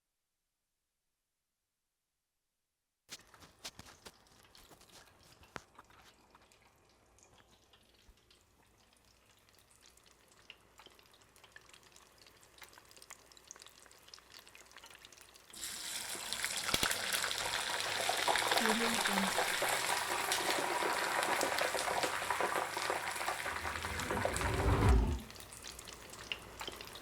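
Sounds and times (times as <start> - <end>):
ticks and crackles of heating oil: 3.1 - 18.8
food frying in hot oil: 3.1 - 23.7, 25.3 - 27.0.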